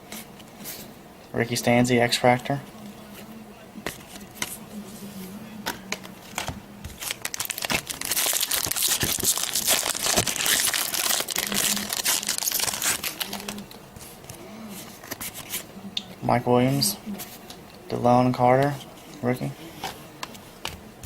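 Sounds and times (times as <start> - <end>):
foil wrapper crinkling: 6.3 - 13.8.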